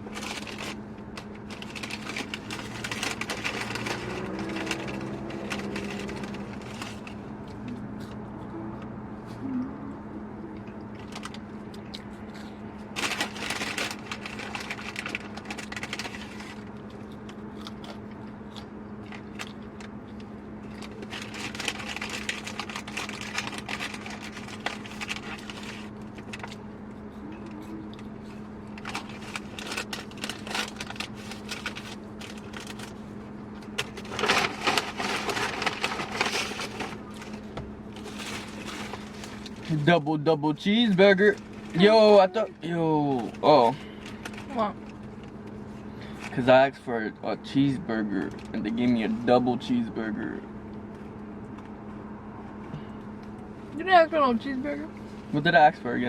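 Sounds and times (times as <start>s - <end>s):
paper wrappers crinkling: 0.0s - 7.3s, 12.9s - 17.3s, 19.1s - 26.7s, 28.7s - 39.9s
steady low hum: 0.0s - 56.0s.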